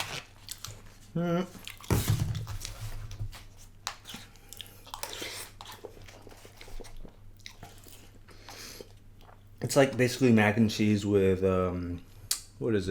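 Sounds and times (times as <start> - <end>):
person chewing food: 0.0 - 2.8, 3.8 - 9.6.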